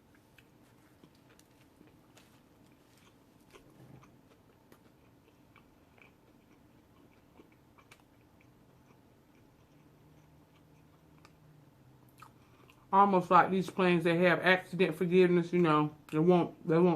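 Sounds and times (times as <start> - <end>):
chewing sandwich: 0.0 - 12.9.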